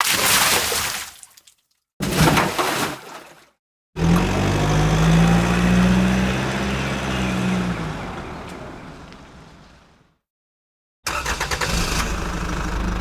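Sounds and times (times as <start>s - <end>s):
vehicle engine running: 4.0s - 10.0s, 11.9s - 13.0s.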